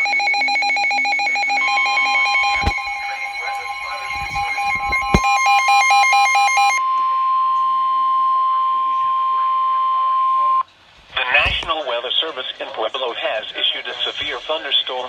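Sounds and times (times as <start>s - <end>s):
rapid pulsing electronic alarm: 0.0s - 6.8s
steady warning alarm tone: 0.0s - 6.8s
sharp knocks: 3.9s - 5.3s, 11.0s - 11.7s.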